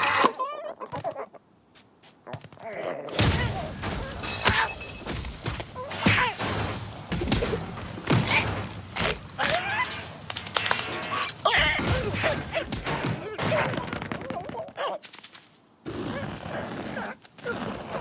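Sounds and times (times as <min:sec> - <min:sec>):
character cries and squawks: 0:00.0 - 0:01.6.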